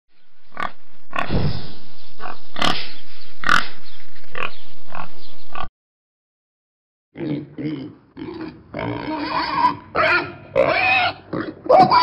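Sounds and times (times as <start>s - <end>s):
pig grunting: 7.2s - 12.0s.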